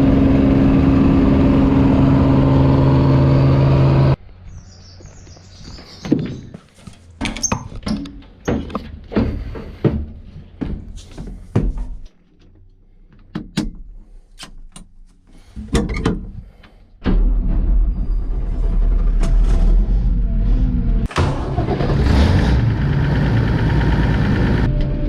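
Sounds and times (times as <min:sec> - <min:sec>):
irregular knocks and clicks: 0:07.2 - 0:14.9.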